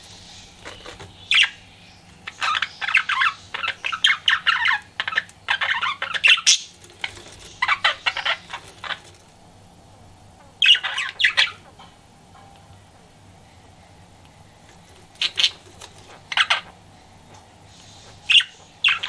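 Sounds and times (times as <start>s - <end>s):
budgerigar chattering: 2.2s - 9.1s, 10.4s - 11.8s, 15.1s - 16.8s, 18.1s - 19.0s.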